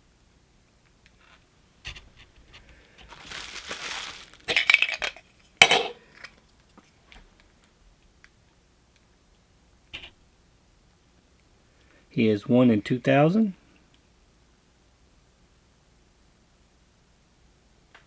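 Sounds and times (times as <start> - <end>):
plastic packaging crinkling: 2.1 - 5.2.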